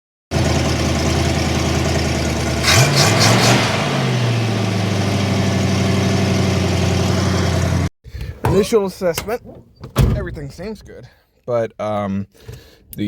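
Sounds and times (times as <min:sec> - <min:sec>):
car engine revving: 0:00.3 - 0:07.9.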